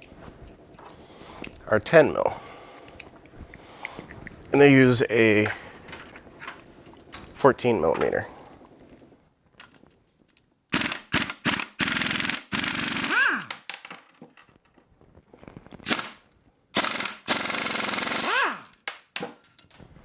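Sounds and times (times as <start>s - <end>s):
impact wrench hammering: 10.7s - 13.7s, 16.8s - 18.8s.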